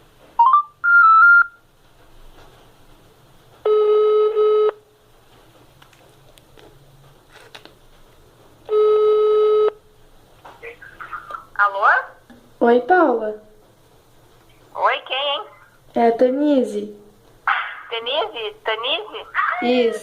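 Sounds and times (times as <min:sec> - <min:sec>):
electronic beeps rising in pitch: 0:00.4 - 0:01.6
phone ringback tones: 0:00.4 - 0:01.6, 0:03.7 - 0:04.8, 0:08.7 - 0:09.8.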